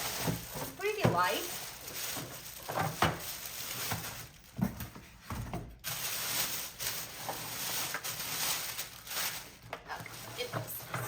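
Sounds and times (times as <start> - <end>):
packaging rustling: 0.0 - 11.0.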